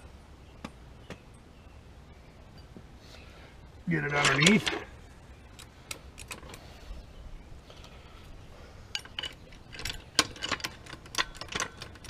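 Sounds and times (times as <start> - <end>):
jack clicking and knocking: 8.9 - 12.0.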